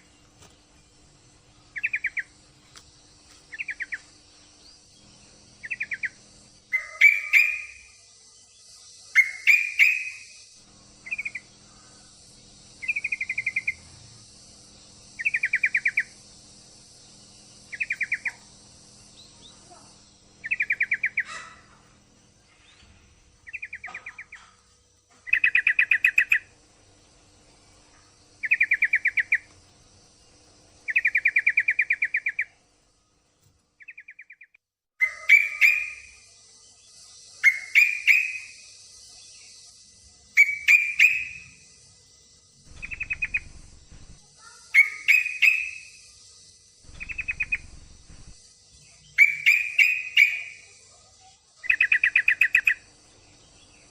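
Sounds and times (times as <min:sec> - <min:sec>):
bird chattering trills: 0:01.6 - 0:02.4, 0:03.5 - 0:08.0, 0:08.6 - 0:22.7, 0:23.4 - 0:26.6, 0:28.3 - 0:29.5, 0:30.8 - 0:32.6, 0:33.8 - 0:36.3, 0:36.9 - 0:39.5, 0:40.3 - 0:41.6, 0:42.7 - 0:46.2, 0:46.8 - 0:53.9.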